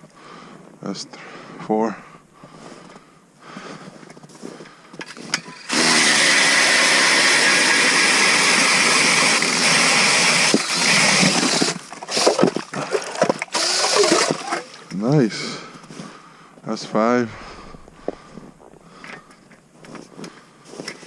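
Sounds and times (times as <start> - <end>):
drill auger grinding through ice: 5.0 - 14.9.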